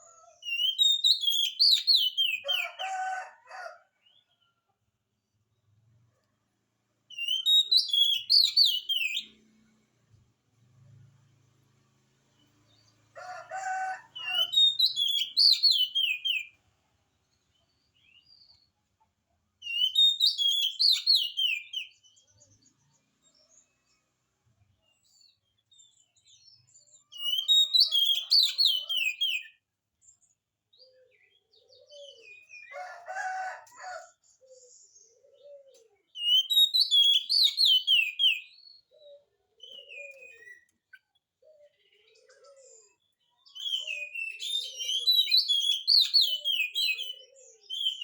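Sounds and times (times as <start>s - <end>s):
bird singing whistled notes: 0.5s - 2.4s, 7.1s - 9.4s, 14.5s - 16.5s, 19.6s - 22.0s, 36.2s - 38.9s, 39.6s - 40.7s, 43.5s - 48.0s.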